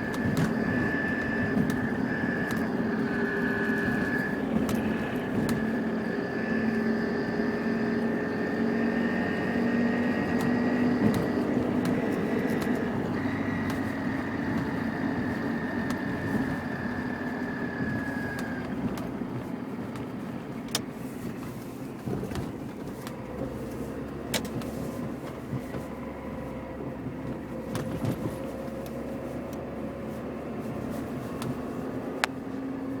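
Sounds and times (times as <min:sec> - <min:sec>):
whine rising in pitch: 0:00.0 - 0:18.8
steady engine rumble: 0:00.0 - 0:33.0.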